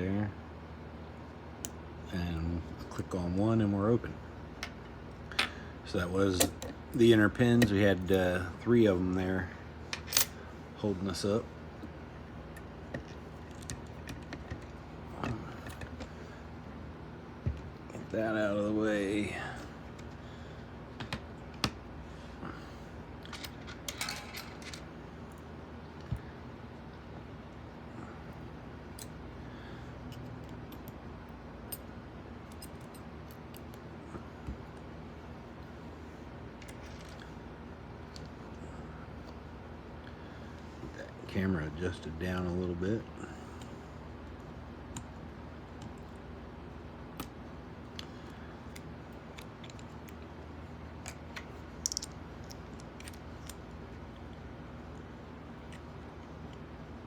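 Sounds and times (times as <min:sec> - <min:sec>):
steady low hum: 0:00.0 - 0:57.0
metal lock parts clicking: 0:51.0 - 0:53.6.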